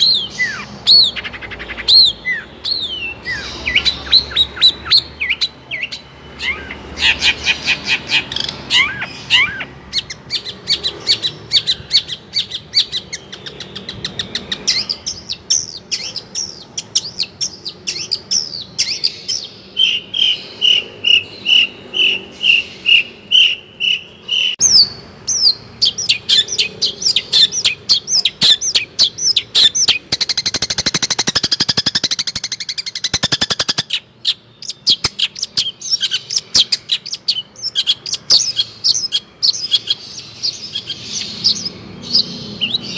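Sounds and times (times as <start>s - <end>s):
rapid bird trill: 0.0s - 42.9s.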